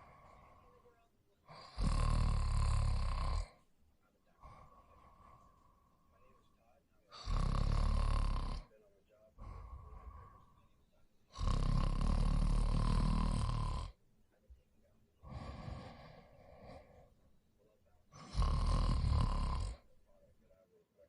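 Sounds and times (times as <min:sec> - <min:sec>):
person snoring: 0:00.0 - 0:00.9, 0:01.5 - 0:03.6, 0:04.4 - 0:06.4, 0:07.1 - 0:08.7, 0:09.4 - 0:10.7, 0:11.3 - 0:14.0, 0:15.2 - 0:17.2, 0:18.1 - 0:19.9.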